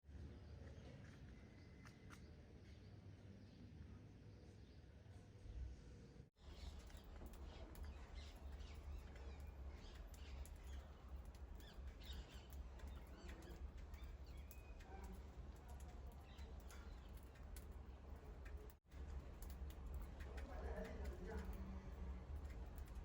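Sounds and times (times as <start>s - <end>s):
small birds chirping: 6.4s - 23.0s.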